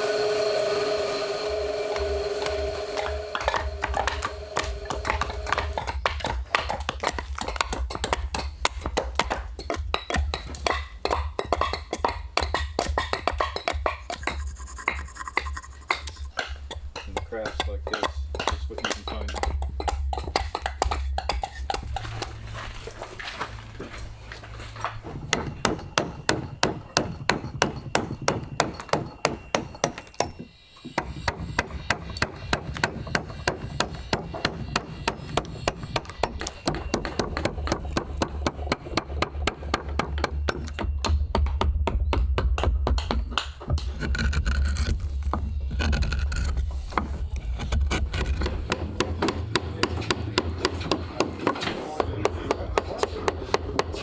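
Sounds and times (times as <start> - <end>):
music with percussive beat and bass: 3.2 - 22.8, 25.2 - 43.8.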